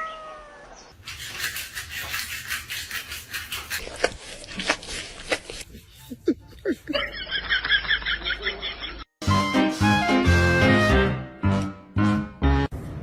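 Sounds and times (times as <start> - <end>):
music: 9.2 - 13.0.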